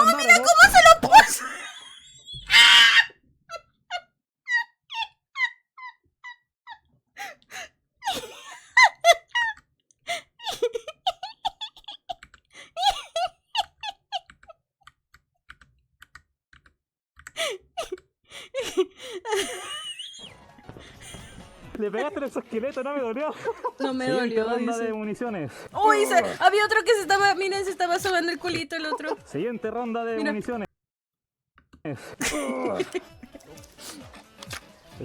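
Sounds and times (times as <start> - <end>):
high-pitched squeaky laughter: 0.0 - 6.8, 8.1 - 9.6, 10.4 - 12.2, 12.8 - 14.3, 19.3 - 20.3.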